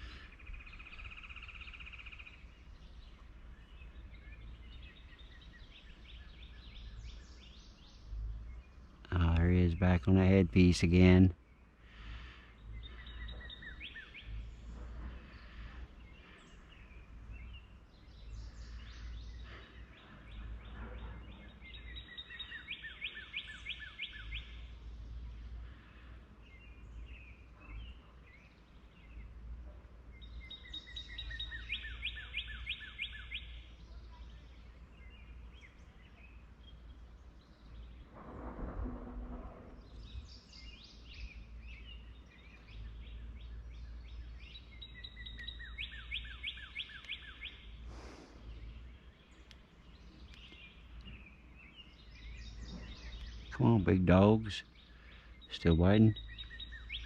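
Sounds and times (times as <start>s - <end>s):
bird trilling song: 0.0s - 29.5s, 30.1s - 38.1s, 39.8s - 57.0s
songbirds singing: 0.0s - 57.0s
low rumble: 37.8s - 42.3s.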